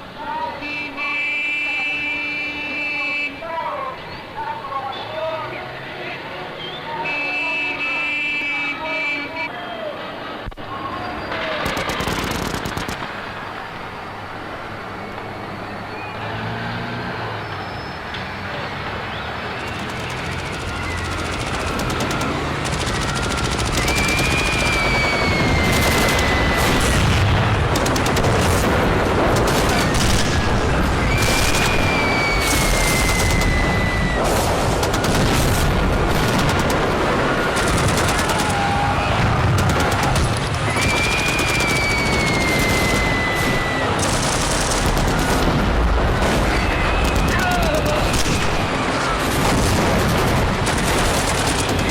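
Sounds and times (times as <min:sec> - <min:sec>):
machine-gun and rifle fire: 0:11.3 - 0:13.7, 0:19.5 - 0:51.9.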